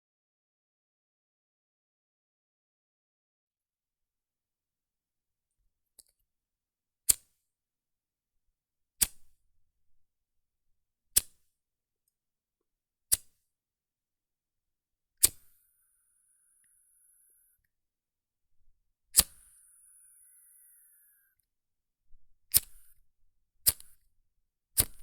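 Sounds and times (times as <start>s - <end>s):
lighter strike clicks: 7.1s - 7.4s, 9.0s - 9.4s, 11.2s - 11.4s, 15.2s - 15.6s, 19.2s - 19.5s, 22.5s - 23.0s, 23.7s - 24.0s, 24.8s - 25.0s
lighter hissing: 15.2s - 15.6s, 19.2s - 21.3s, 22.5s - 23.0s, 23.7s - 24.0s, 24.8s - 25.0s.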